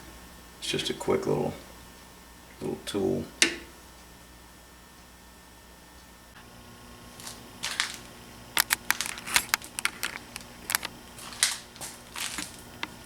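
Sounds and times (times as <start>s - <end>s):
faint steady hum: 0.0s - 13.0s
metal parts clicking: 7.6s - 12.6s.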